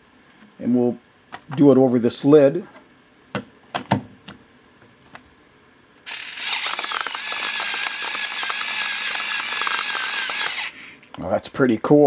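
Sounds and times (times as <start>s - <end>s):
pepper mill grinding salt: 6.1s - 10.8s.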